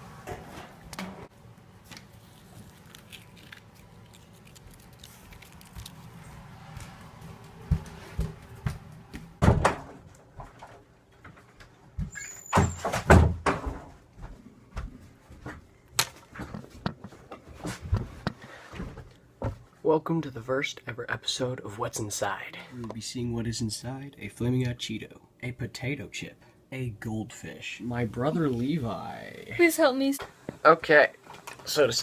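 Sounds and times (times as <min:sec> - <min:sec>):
knocks and thumps: 0:09.4 - 0:10.7, 0:12.0 - 0:14.0.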